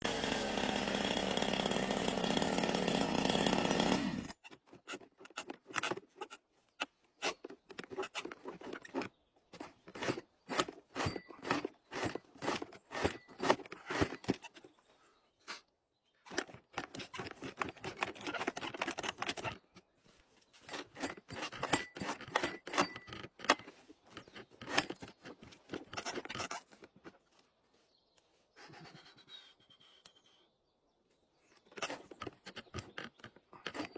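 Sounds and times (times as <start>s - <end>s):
chainsaw running: 0.0s - 6.0s, 7.3s - 14.6s, 16.3s - 19.6s, 20.6s - 26.9s, 31.7s - 33.9s.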